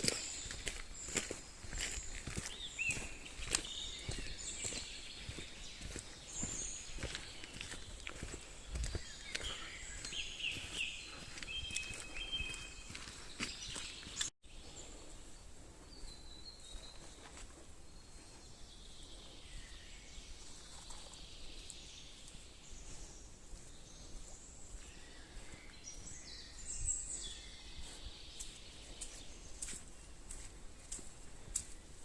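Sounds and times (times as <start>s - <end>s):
high-pitched bird calls: 0.0s - 14.3s.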